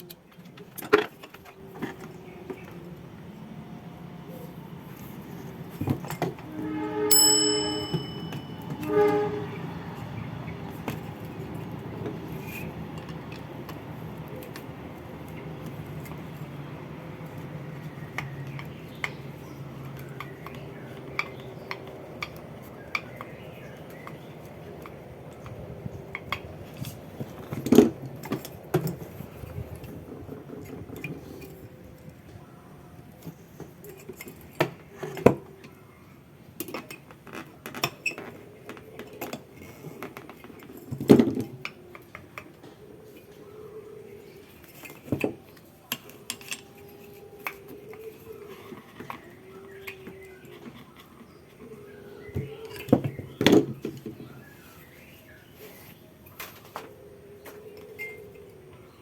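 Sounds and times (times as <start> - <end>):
metal tools clinking: 7.1 - 9.0.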